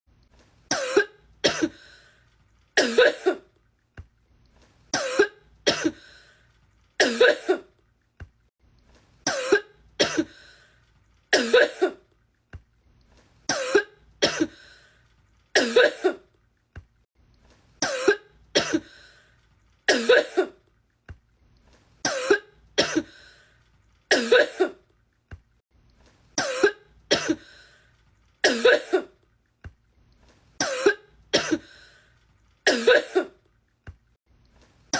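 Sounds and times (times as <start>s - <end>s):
woman coughing: 0.7s - 1.8s, 2.8s - 3.5s, 5.0s - 6.0s, 7.0s - 7.8s, 9.3s - 10.4s, 11.4s - 12.0s, 13.5s - 14.6s, 15.6s - 16.3s, 17.8s - 18.9s, 19.9s - 20.6s, 22.1s - 23.2s, 24.1s - 24.8s, 26.4s - 27.5s, 28.4s - 29.2s, 30.6s - 31.7s, 32.7s - 33.4s.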